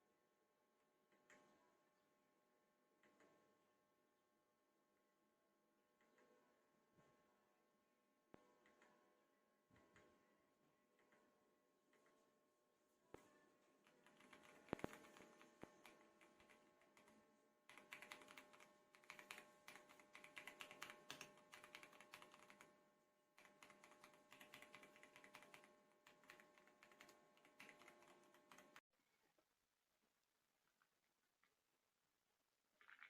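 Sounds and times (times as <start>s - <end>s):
mechanical keyboard typing: 13.8s - 22.7s, 23.4s - 28.8s.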